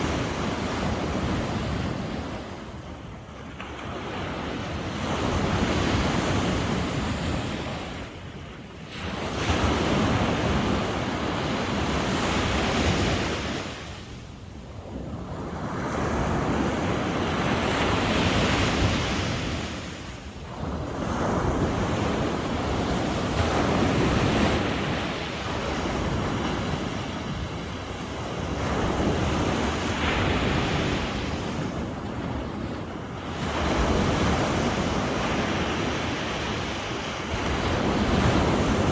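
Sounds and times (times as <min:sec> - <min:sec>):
ocean waves breaking: 0:15.0 - 0:38.9.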